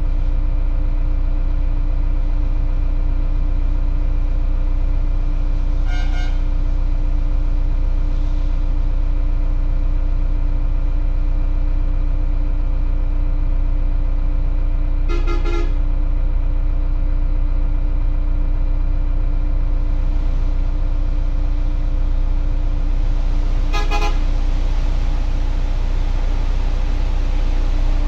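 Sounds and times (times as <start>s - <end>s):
engine drone: 0.0s - 28.0s
vehicle horn tooting: 5.8s - 6.5s, 15.1s - 15.8s, 23.7s - 24.2s.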